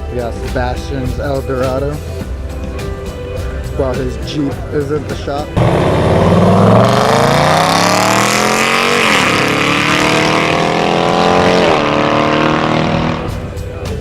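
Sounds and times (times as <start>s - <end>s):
car engine accelerating: 5.5s - 13.8s.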